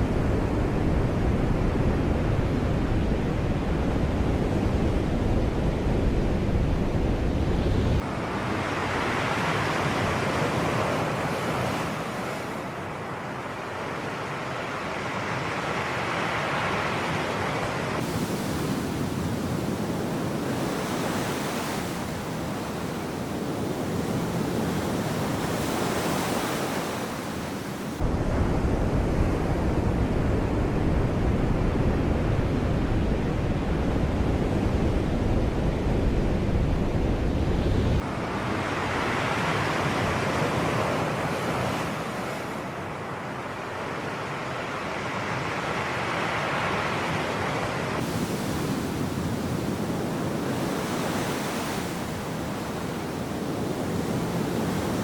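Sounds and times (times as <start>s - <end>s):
sea waves breaking: 14.2s - 28.0s, 37.3s - 55.0s.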